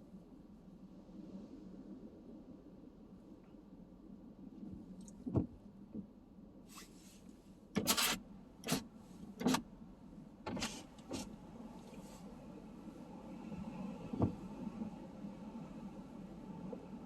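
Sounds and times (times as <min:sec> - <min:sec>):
low steady hum: 0:00.0 - 0:17.0
rubbing scraping noises: 0:07.8 - 0:08.8, 0:10.5 - 0:11.3.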